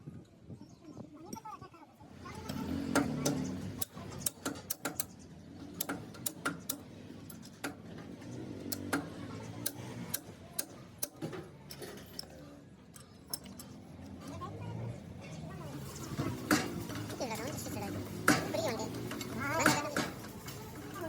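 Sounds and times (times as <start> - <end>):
hand tools clicking on metal: 2.4 - 14.4.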